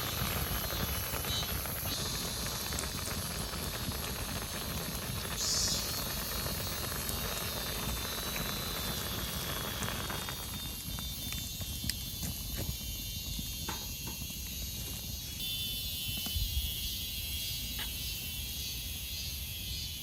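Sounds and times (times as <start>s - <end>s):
soup bubbling in a pot: 0.0s - 15.2s.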